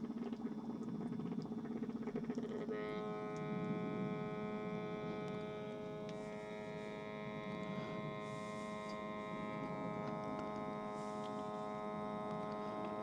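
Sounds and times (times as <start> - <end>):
smoke machine humming: 2.8 - 13.0.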